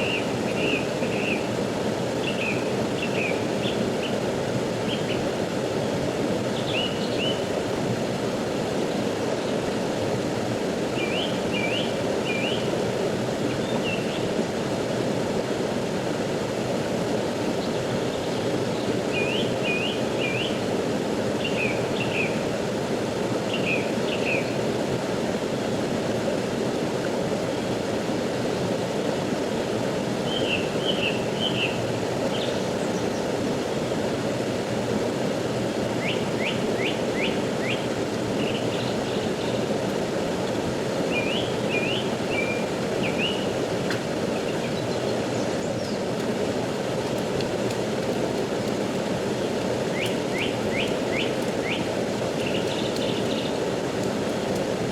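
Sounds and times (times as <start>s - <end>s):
fast-flowing stream rushing: 0.0s - 54.9s
small birds chirping: 41.1s - 46.3s, 47.0s - 54.4s.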